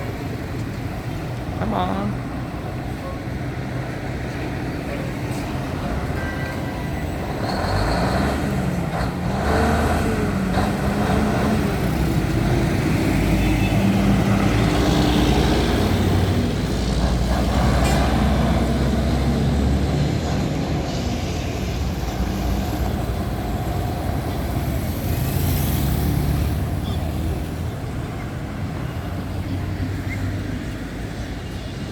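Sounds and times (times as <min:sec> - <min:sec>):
street traffic: 0:00.0 - 0:31.9
diesel truck engine revving: 0:07.3 - 0:27.6.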